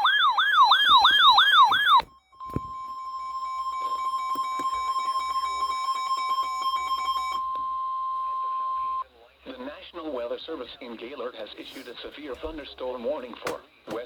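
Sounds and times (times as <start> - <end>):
steady warning alarm tone: 0.0 - 9.0
wailing siren: 0.0 - 9.0.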